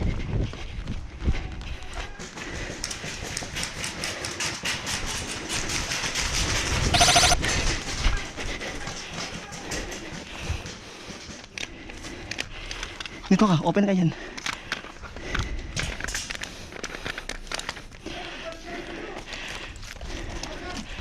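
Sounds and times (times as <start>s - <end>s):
airsoft guns firing: 7.0s - 7.4s.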